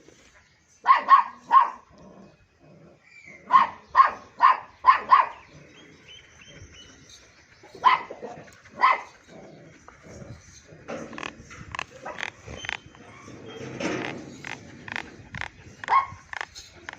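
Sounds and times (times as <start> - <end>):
dog barking: 0.8 - 1.9, 3.5 - 5.5, 7.8 - 9.1, 15.8 - 16.2.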